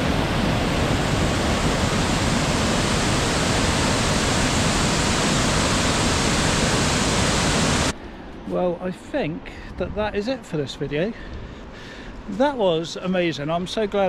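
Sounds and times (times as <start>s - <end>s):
waterfall rushing: 0.0s - 7.9s.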